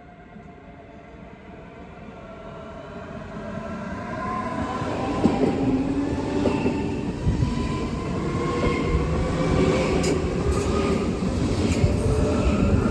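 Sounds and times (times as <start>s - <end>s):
train rumbling past: 2.7s - 12.9s.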